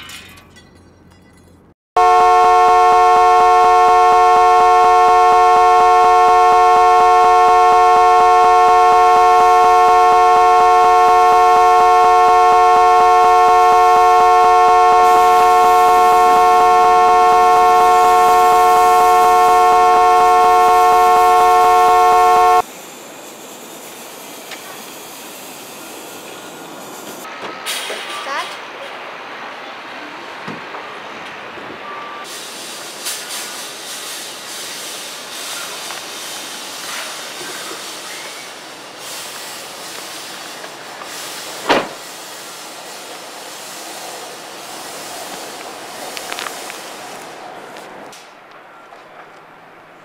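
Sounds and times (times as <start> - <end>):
car horn long note: 2.0 - 22.7.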